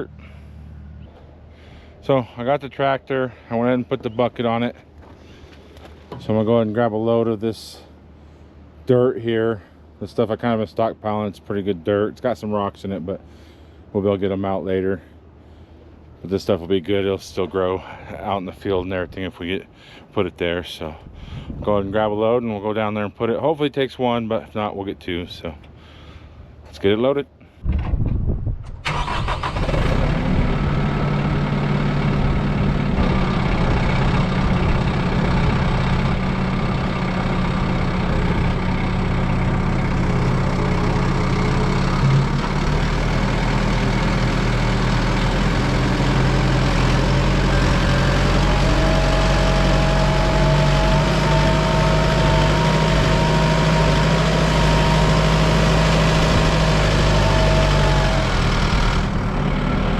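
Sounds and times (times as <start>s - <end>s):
tractor engine running: 28.7s - 59.9s.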